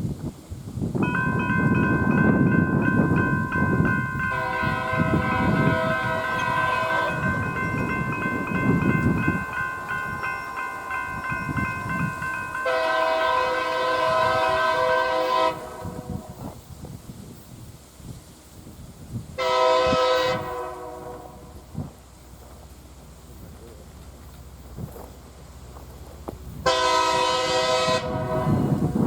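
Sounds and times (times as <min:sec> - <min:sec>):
passing train rumble: 0:00.0 - 0:29.0
train air horn blast: 0:04.2 - 0:07.5, 0:12.6 - 0:16.4, 0:19.4 - 0:21.6, 0:26.6 - 0:29.0.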